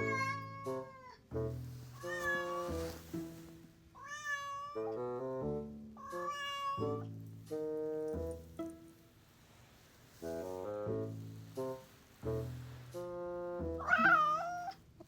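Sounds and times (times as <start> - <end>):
cat meowing: 0.0 - 1.2, 2.0 - 2.7, 4.0 - 4.9, 6.0 - 7.0, 13.8 - 14.8
piano music: 0.0 - 3.8, 4.8 - 9.1, 10.1 - 14.6.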